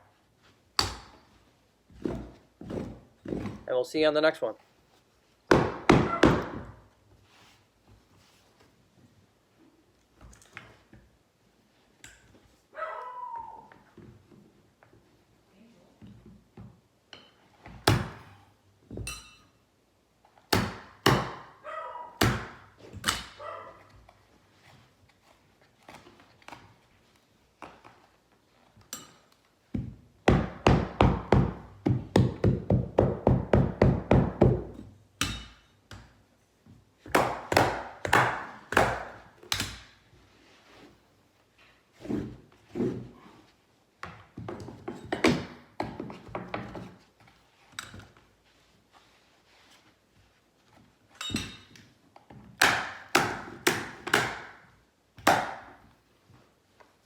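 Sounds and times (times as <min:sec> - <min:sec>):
tool knocking on wood: 0:29.8 - 0:34.8.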